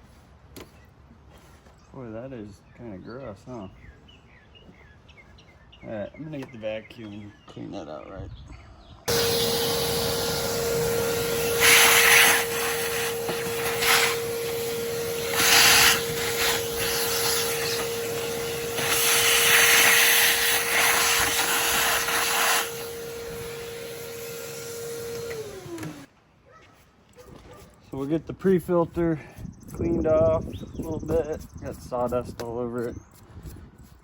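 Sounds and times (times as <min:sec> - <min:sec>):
rushing suction noise: 0:09.1 - 0:26.1
vacuum cleaner motor whine: 0:09.1 - 0:26.1.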